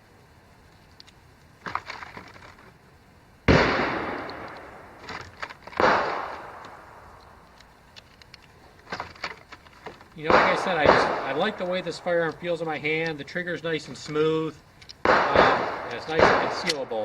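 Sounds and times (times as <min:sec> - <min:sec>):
pistol shots echoing: 0:03.5 - 0:05.0, 0:05.8 - 0:07.2, 0:10.2 - 0:12.6, 0:15.0 - 0:17.0.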